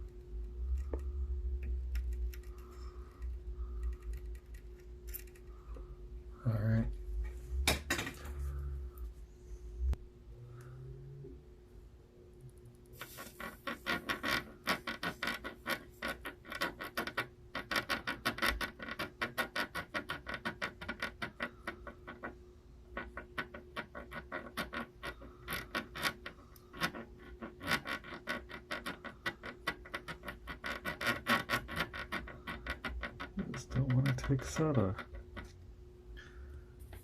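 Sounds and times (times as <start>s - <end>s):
faint hum: 0.0s - 16.5s, 32.2s - 37.0s
hand tool scratching circuit board: 23.0s - 35.6s.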